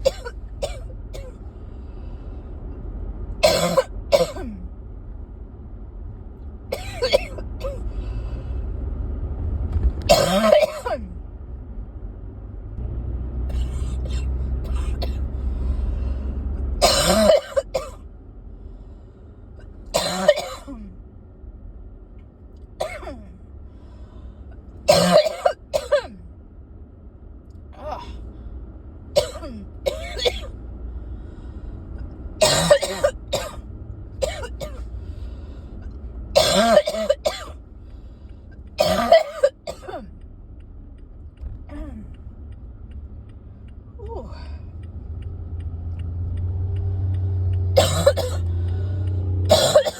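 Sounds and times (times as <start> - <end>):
person coughing: 0.0 - 1.3, 3.4 - 4.6, 6.7 - 7.8, 10.1 - 11.1, 16.8 - 18.0, 20.0 - 20.9, 22.8 - 23.3, 24.9 - 26.2, 29.2 - 30.5, 32.4 - 33.6, 36.4 - 37.5, 38.8 - 40.1, 47.8 - 48.5, 49.5 - 49.9.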